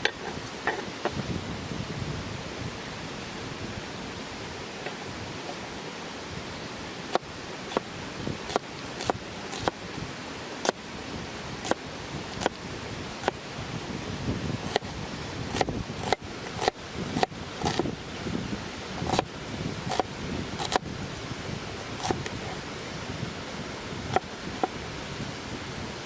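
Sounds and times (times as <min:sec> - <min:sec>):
river rushing: 0:00.0 - 0:26.0
knife chopping on cutting board: 0:15.5 - 0:17.8, 0:19.0 - 0:19.2.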